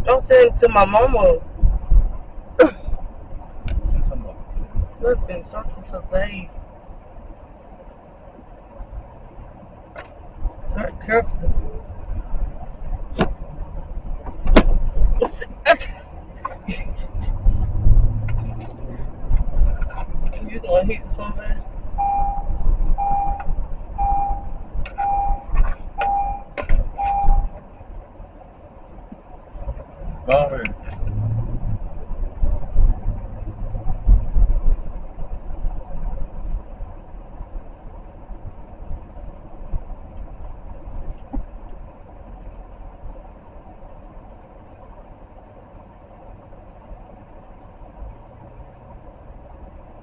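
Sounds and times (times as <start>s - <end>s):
car engine and road rumble: 0.0s - 50.0s
sharp clicks and knocks: 14.2s - 15.4s, 24.8s - 27.7s
vehicle reverse warning beeps: 22.0s - 27.6s
low thumps: 30.7s - 35.8s.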